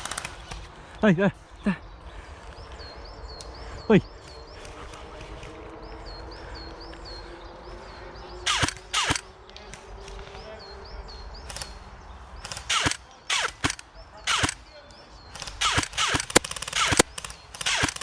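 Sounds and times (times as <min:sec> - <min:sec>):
airsoft gun shots: 0:08.5 - 0:09.2, 0:12.4 - 0:14.6, 0:15.4 - 0:18.0.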